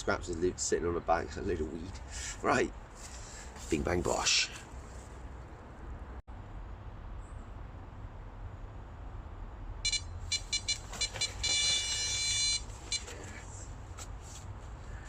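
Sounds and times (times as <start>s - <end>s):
bite alarm beeping: 9.9s - 13.4s.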